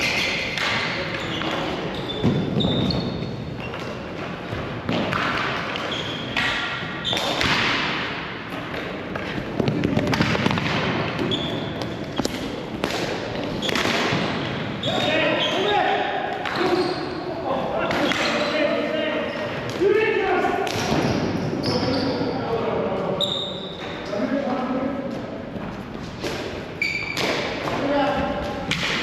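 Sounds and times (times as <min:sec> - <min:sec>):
shoes squeaking on court: 0:01.0 - 0:04.2, 0:05.7 - 0:07.4, 0:11.1 - 0:12.7, 0:16.5 - 0:17.2, 0:21.0 - 0:22.4, 0:23.2 - 0:24.1, 0:26.8 - 0:27.2.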